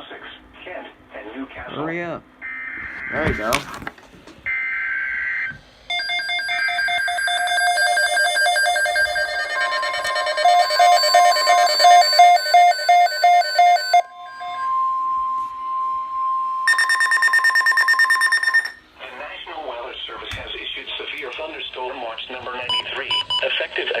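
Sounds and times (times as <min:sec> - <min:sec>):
steady alarm tone: 0:04.5 - 0:18.9
pulsing electronic alarm beeps: 0:05.9 - 0:18.8.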